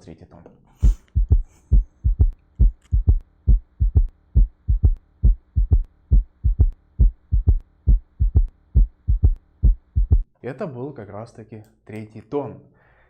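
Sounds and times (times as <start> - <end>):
faint steady hum: 0.5 - 10.3
heartbeat in gallop rhythm: 0.8 - 10.3.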